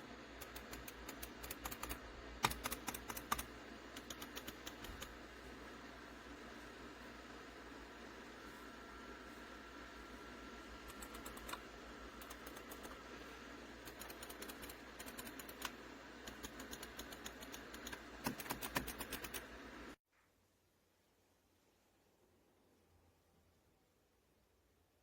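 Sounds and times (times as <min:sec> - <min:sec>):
steady background hum: 0:00.0 - 0:20.0
computer keys clicking: 0:00.4 - 0:05.2, 0:10.8 - 0:13.0, 0:13.8 - 0:19.5.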